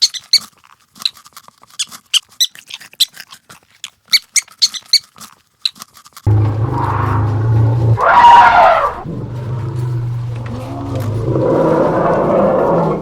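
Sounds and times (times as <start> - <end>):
small animal squeaks: 0.0 - 1.2, 1.8 - 5.8
loud steady low hum: 6.3 - 13.0.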